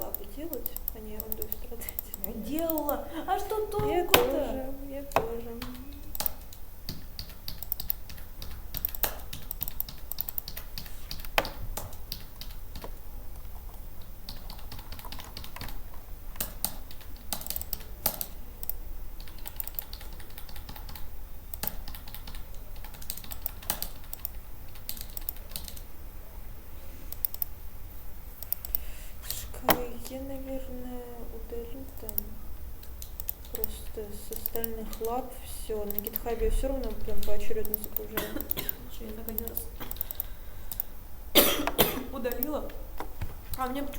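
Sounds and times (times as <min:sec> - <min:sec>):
low steady hum: 0:00.0 - 0:43.9
keyboard key clicks: 0:05.1 - 0:13.5.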